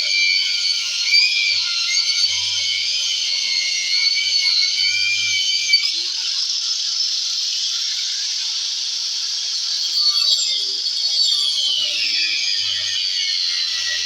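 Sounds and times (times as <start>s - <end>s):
angle grinder whining: 10.4s - 14.0s.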